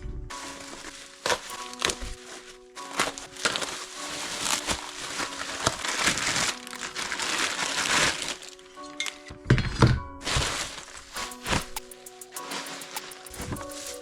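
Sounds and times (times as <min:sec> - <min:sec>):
dense crinkling scraping noise: 0:00.4 - 0:08.6
music with held notes: 0:11.2 - 0:14.0.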